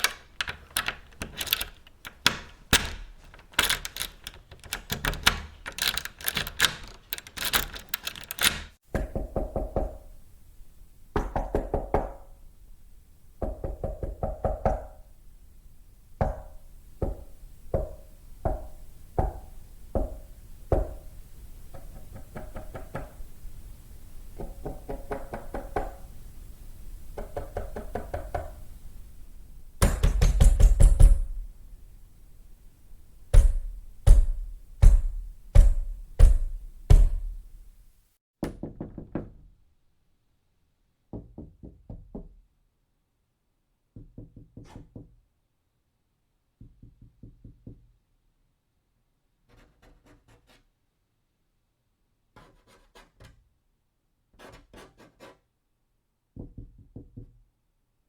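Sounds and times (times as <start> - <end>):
key rattling in door lock: 0.0 - 8.8
knocking on door: 8.9 - 10.1, 11.2 - 12.2, 13.4 - 15.0, 24.4 - 26.0, 29.8 - 31.4, 33.3 - 37.4, 38.4 - 39.5, 41.1 - 42.4, 44.0 - 45.2, 56.4 - 57.4.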